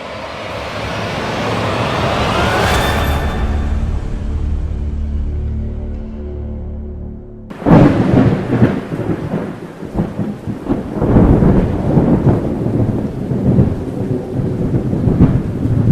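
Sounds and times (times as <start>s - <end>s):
loud continuous rumbling: 0.0s - 9.4s.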